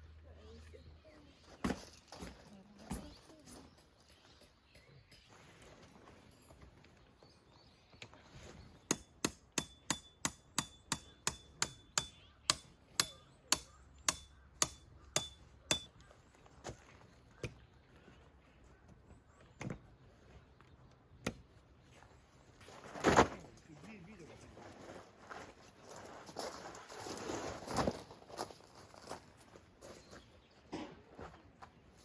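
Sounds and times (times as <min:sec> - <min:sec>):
hammer striking tent pegs: 0:08.9 - 0:15.9.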